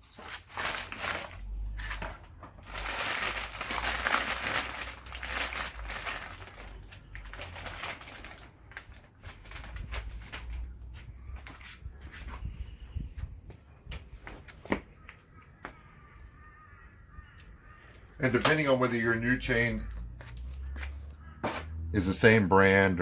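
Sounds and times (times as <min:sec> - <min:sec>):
packaging rustling and crinkling: 0:00.0 - 0:12.4.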